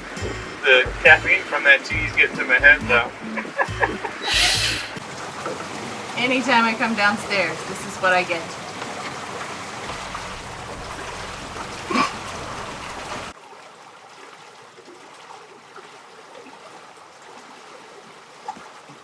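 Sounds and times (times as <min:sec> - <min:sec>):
water rushing along hull: 0:00.0 - 0:19.0
brief pitched sound: 0:04.2 - 0:05.0.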